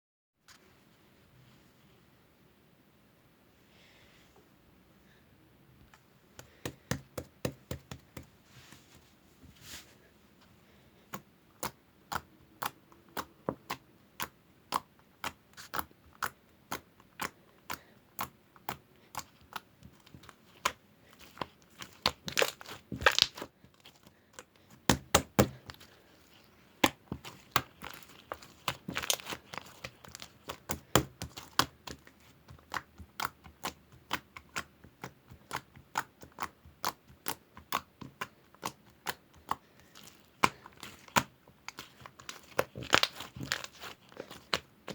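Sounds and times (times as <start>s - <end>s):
slime clicking and popping: 20.6s - 23.5s, 26.8s - 44.9s.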